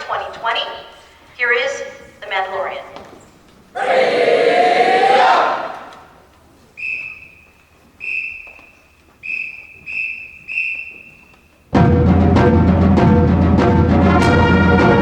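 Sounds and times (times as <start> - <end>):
whistle blasts: 6.8 - 11.7.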